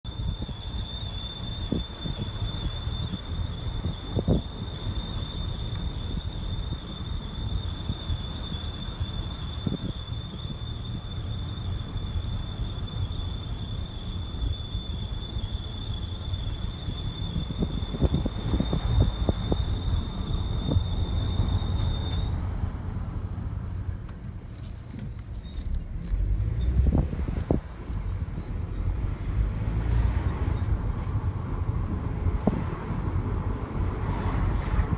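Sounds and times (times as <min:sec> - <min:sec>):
high-pitched squeal: 0:00.0 - 0:22.6
car low rumbling noise: 0:00.0 - 0:34.9.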